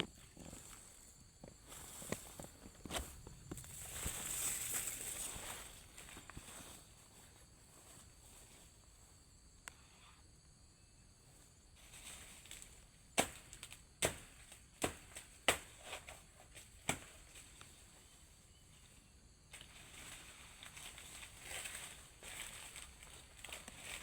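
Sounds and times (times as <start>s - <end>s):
rustling of leaves: 0.4s - 8.8s, 11.8s - 24.0s
machete chopping plant: 13.2s - 17.4s.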